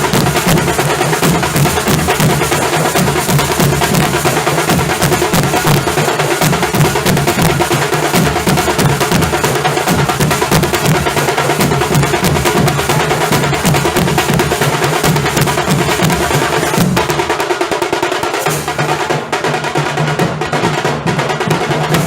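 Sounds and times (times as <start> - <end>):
drum ensemble drumming: 0.0 - 22.0.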